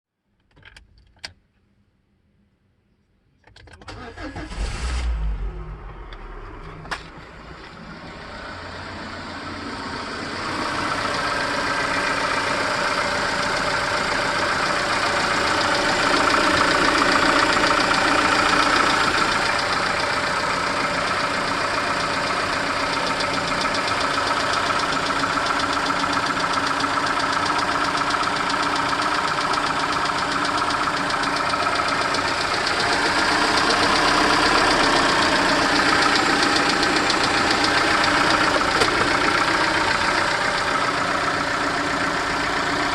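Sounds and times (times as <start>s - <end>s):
car engine starting and idling: 3.5s - 42.9s
engine knock: 9.9s - 42.9s.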